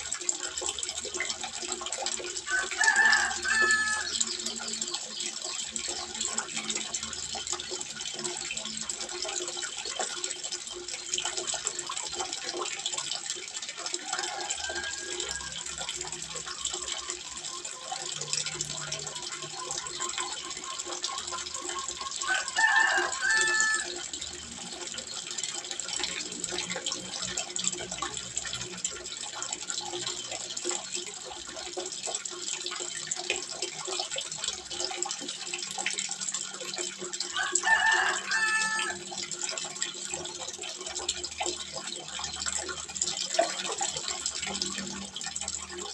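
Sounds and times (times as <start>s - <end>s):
water trickling into pond: 0.0s - 45.9s
rooster crowing: 2.5s - 4.2s, 14.0s - 15.6s, 22.2s - 24.0s, 37.4s - 39.0s.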